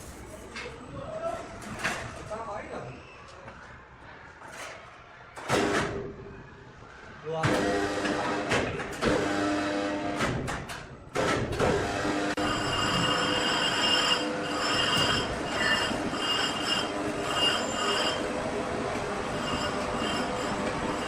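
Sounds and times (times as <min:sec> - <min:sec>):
sawmill saw squealing through log: 0:12.4 - 0:18.4, 0:19.2 - 0:21.0.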